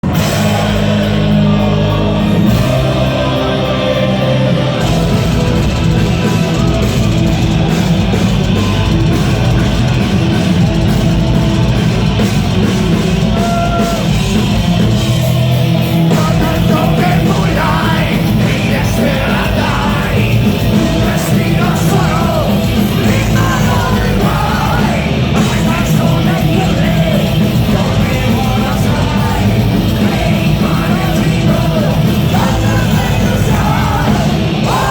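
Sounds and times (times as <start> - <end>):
metal band playing live: 0.0 - 34.9
person singing and yelling: 16.0 - 34.9.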